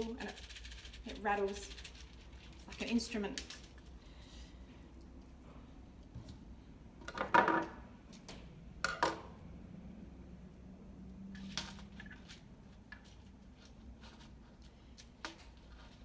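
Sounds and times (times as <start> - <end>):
dried seed pod rattling: 0.0 - 4.0.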